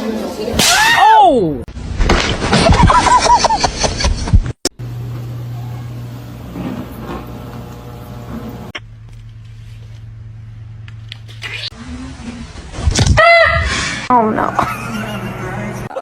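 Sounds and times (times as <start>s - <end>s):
low mechanical hum: 4.7s - 16.0s.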